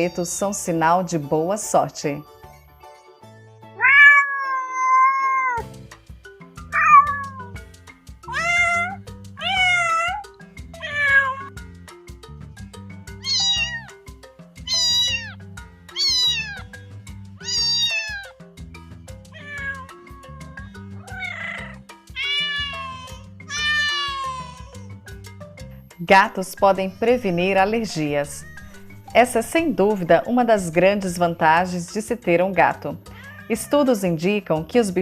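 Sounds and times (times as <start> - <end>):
background music: 0.0 - 35.0
cats meowing: 3.8 - 5.7, 6.6 - 11.5, 13.2 - 14.0, 14.6 - 16.8, 17.4 - 18.3, 19.3 - 24.9, 27.8 - 29.1, 33.0 - 33.8.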